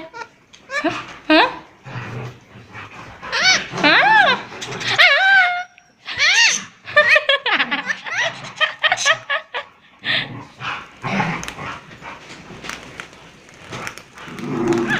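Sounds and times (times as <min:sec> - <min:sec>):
parrot chirping: 0:03.3 - 0:04.4, 0:07.8 - 0:09.0
parrot squawking raspily: 0:03.3 - 0:06.7, 0:07.8 - 0:08.4.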